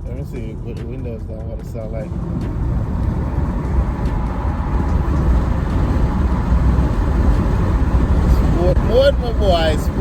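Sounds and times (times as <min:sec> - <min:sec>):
road noise: 0:00.0 - 0:10.0
car exhaust rumble: 0:01.7 - 0:10.0
wind noise: 0:02.1 - 0:10.0.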